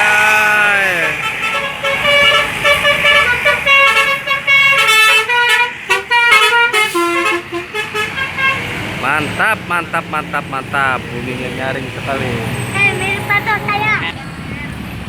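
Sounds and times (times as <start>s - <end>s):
musical air horn tune: 1.1s - 8.7s.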